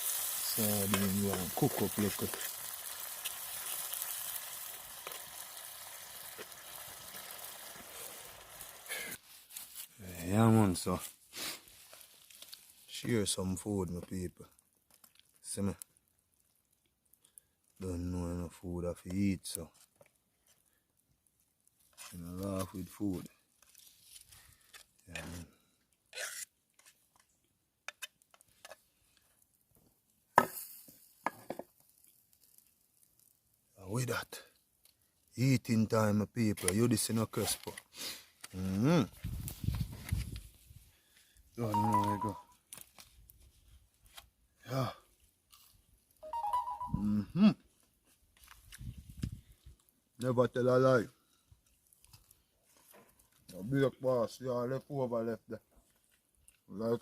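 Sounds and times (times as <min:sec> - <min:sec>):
fish sizzling in hot oil: 0:00.0 - 0:09.2.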